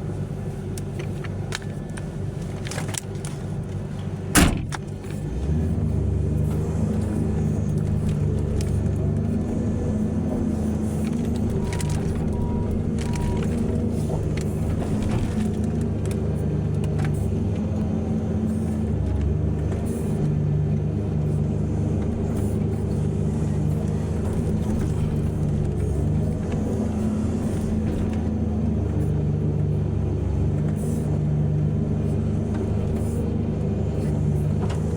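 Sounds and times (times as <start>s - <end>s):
diesel engines running under load: 0.0s - 34.9s
knocks and clunks: 4.3s - 5.2s.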